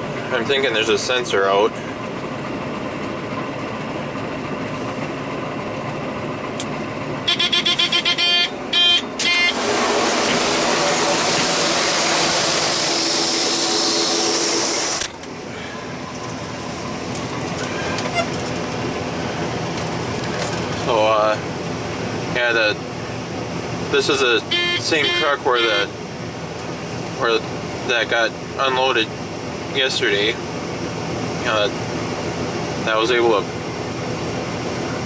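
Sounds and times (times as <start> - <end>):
combine humming in the cab: 0.0 - 35.0
electronic warning beeps: 7.3 - 9.6, 24.5 - 25.9
loud steady rushing noise: 9.5 - 15.1.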